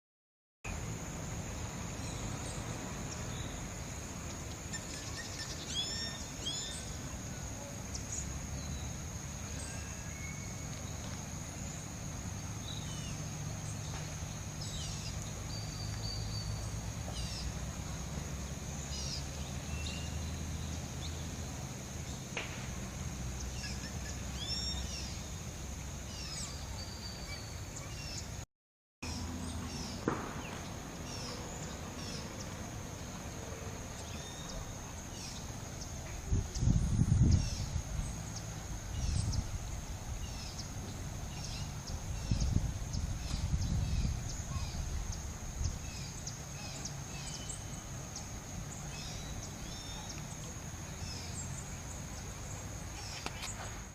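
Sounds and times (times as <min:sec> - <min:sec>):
high insect drone: 0:00.7 - 0:28.4, 0:29.1 - 0:53.9.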